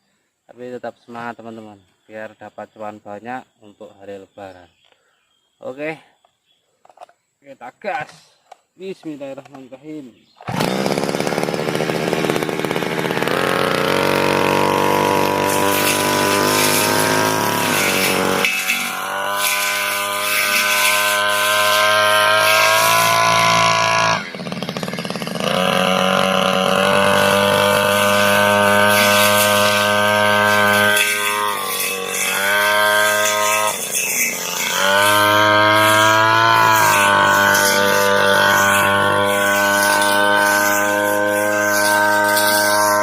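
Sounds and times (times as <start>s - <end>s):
brush cutter engine revving: 8.9s - 43.0s.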